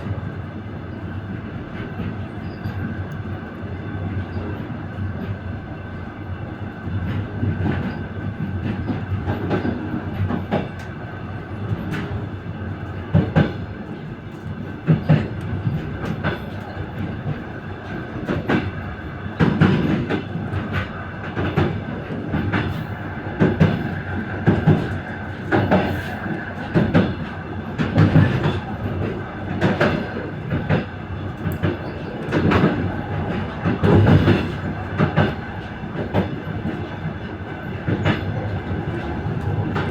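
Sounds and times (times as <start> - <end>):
train running rumble: 0.0 - 39.9
train wheels clacking over rail joints: 7.0 - 11.0, 12.9 - 39.9.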